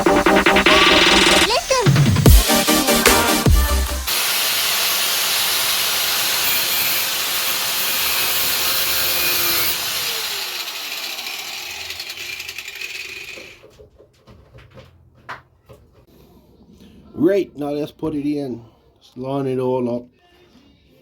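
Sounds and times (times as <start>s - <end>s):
power tool cutting and spinning down: 2.4s - 13.6s.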